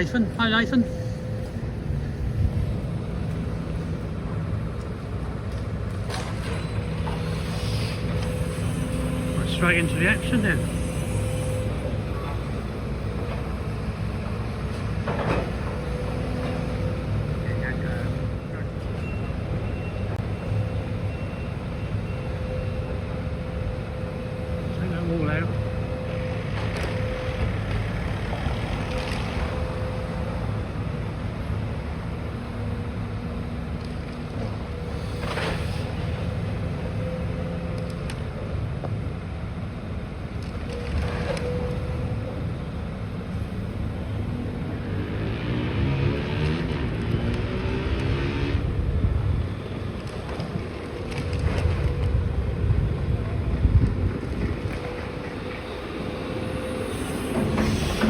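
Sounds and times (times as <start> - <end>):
excavator diesel engine running: 0.0 - 45.0
hydraulic whine: 6.0 - 30.8, 47.9 - 58.0.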